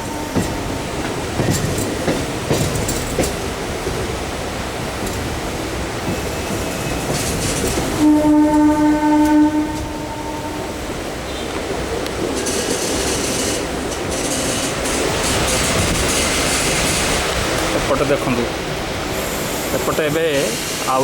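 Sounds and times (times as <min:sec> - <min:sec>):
train horn: 0:00.0 - 0:00.7, 0:08.0 - 0:11.6
train wheels clicking on rail joints: 0:00.0 - 0:10.1, 0:10.8 - 0:21.0.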